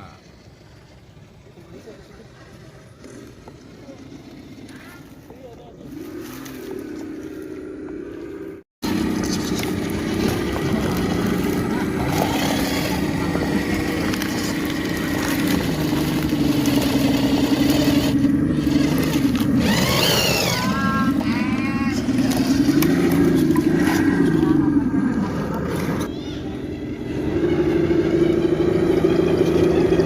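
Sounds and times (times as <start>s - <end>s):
electric motor whining: 5.9s - 26.1s.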